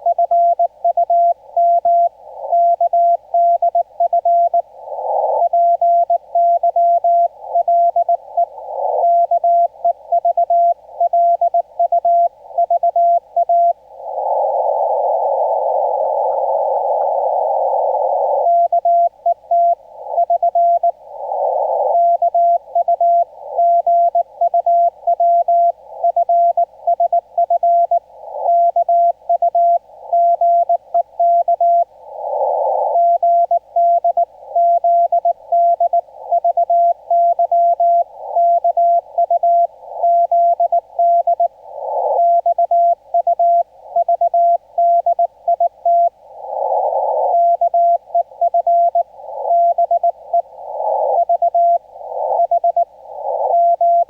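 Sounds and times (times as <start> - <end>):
radio band noise hiss: 4.5 - 6.4, 7.3 - 10.1, 12.3 - 54.0
morse code tone: 33.0 - 41.5, 47.3 - 54.0.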